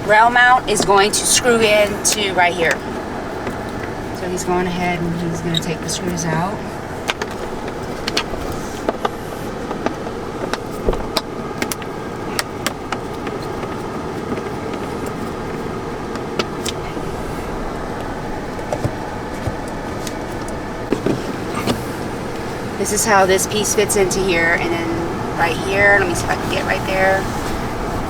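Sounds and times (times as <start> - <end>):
steady background hum: 0.0 - 28.0.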